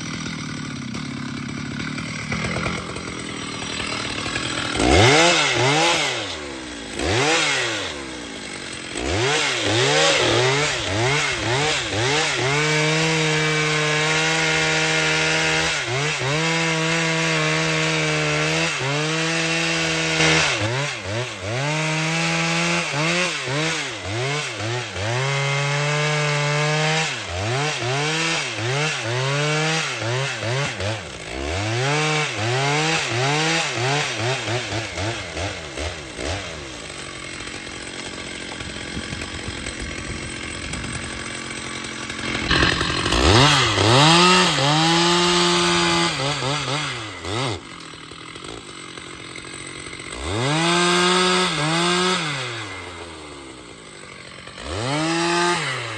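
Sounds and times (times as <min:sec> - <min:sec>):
chainsaw cutting wood: 0:00.0 - 0:55.9.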